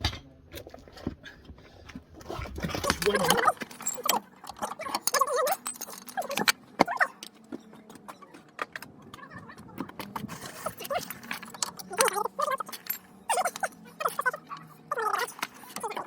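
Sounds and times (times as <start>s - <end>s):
hand tools clinking on metal: 2.8s - 8.2s, 10.4s - 14.3s.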